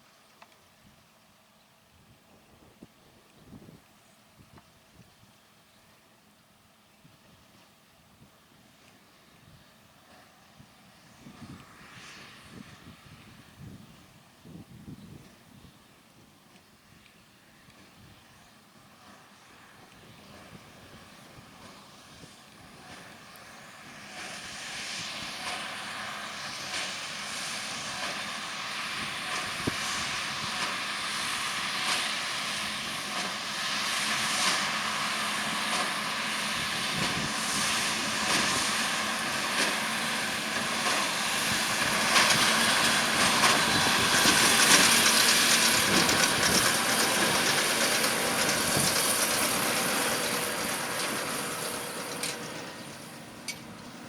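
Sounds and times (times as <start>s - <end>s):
tractor engine and baler: 0.0s - 54.0s.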